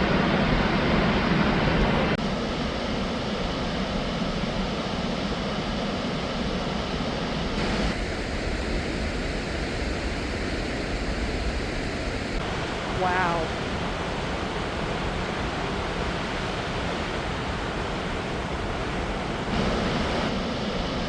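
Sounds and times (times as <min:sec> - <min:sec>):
waterfall rushing: 0:07.6 - 0:20.3.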